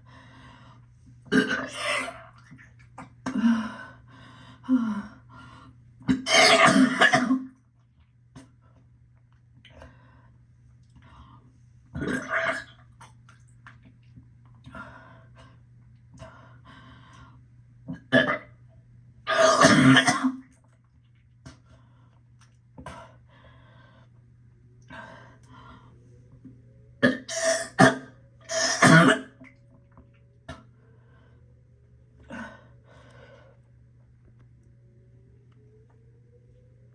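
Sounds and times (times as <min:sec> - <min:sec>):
woman gagging and retching: 0:01.3 - 0:02.6, 0:12.0 - 0:12.8
woman clearing her throat: 0:06.1 - 0:07.5, 0:19.3 - 0:20.4, 0:27.0 - 0:29.4
woman coughing: 0:06.1 - 0:07.5, 0:19.3 - 0:20.4, 0:27.0 - 0:29.3.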